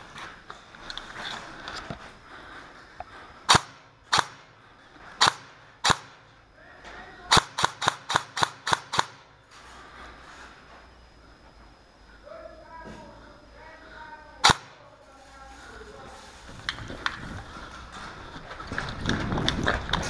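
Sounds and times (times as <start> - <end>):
airsoft gun shots: 3.5 - 4.5, 5.2 - 6.2, 7.3 - 9.3, 14.4 - 14.8.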